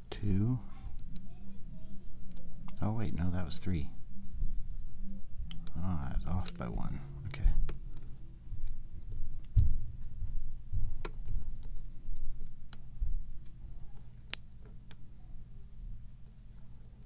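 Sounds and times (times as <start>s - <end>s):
low handling rumble: 0.0s - 14.0s.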